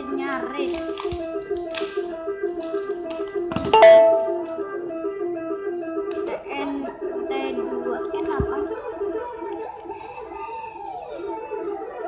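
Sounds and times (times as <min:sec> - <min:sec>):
plucked guitar-like melody: 0:03.8 - 0:04.7.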